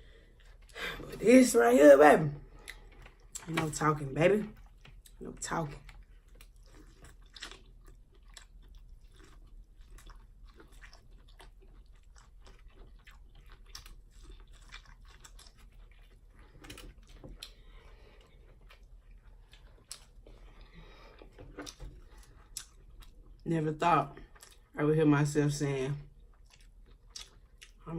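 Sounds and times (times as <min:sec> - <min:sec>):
person chewing wetly: 0:02.4 - 0:03.4, 0:05.8 - 0:23.4, 0:24.1 - 0:24.8, 0:26.1 - 0:27.9.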